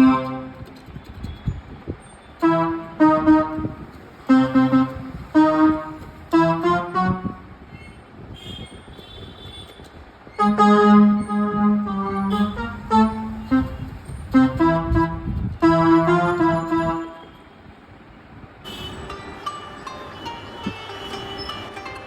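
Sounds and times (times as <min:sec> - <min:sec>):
loud keyboard chord: 0:00.0 - 0:00.6, 0:02.4 - 0:07.3, 0:10.5 - 0:17.1, 0:19.0 - 0:22.0
electronic keyboard organ notes: 0:00.0 - 0:00.8, 0:02.4 - 0:07.3, 0:10.4 - 0:17.1, 0:19.0 - 0:22.0.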